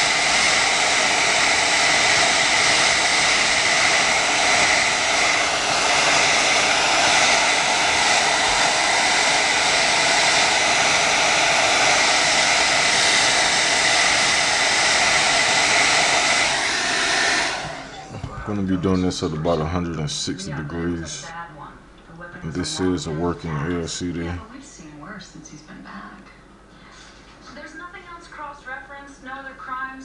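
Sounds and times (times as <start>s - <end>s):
blow dryer whirring: 0.0s - 19.8s.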